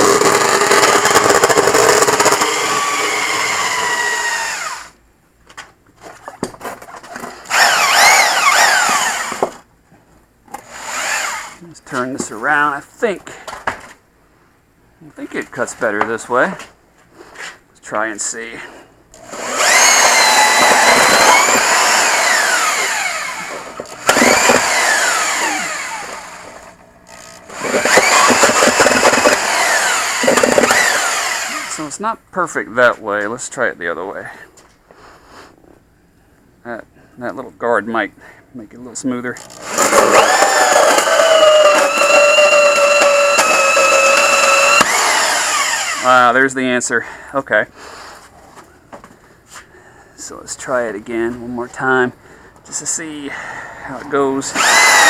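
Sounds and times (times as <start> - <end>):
band saw cutting tire: 0.0 - 5.0, 7.4 - 9.6, 10.6 - 11.6, 19.2 - 32.0, 39.4 - 46.4, 54.2 - 55.0.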